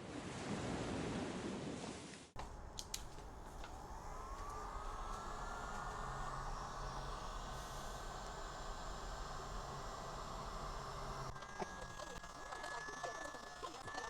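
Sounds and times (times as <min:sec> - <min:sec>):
sharp clicks: 0:02.4 - 0:13.9
heat gun fan whine: 0:02.4 - 0:14.0
hiss of blowing air: 0:02.8 - 0:11.4.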